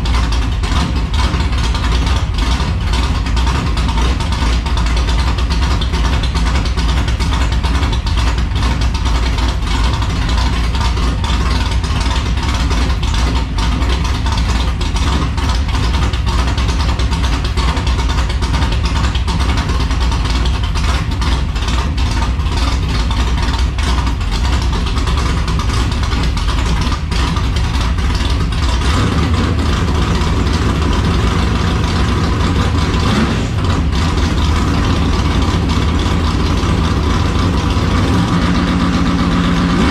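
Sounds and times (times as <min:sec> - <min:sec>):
engine idling: 0:00.0 - 0:39.9.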